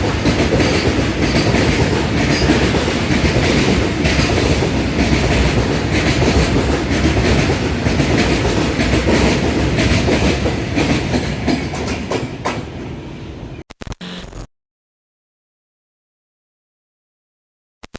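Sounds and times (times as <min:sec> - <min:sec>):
wheels clicking over rail joints: 0:00.0 - 0:12.8
train rumbling: 0:00.0 - 0:13.6.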